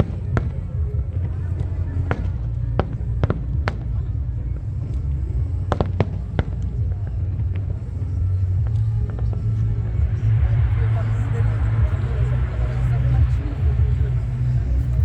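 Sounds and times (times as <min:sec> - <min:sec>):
fireworks bangs and crackles: 0:00.0 - 0:10.6
low rumble: 0:00.0 - 0:15.0.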